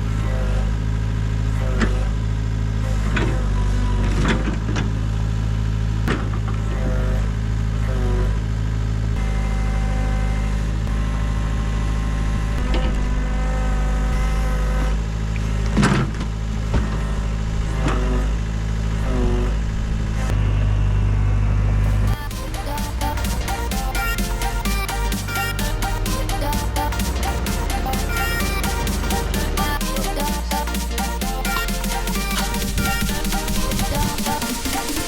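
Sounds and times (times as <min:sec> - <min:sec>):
high whine shifting pitch: 0:19.9 - 0:35.0
excavator diesel engine running: 0:21.8 - 0:35.0.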